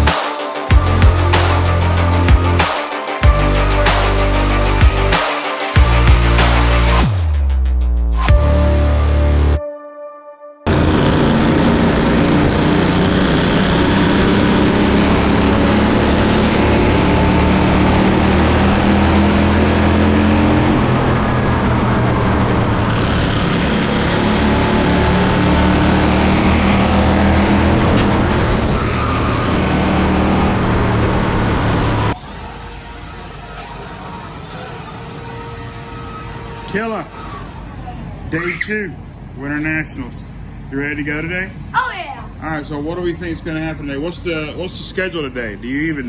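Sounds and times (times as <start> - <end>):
race car engine droning: 10.7 - 35.2.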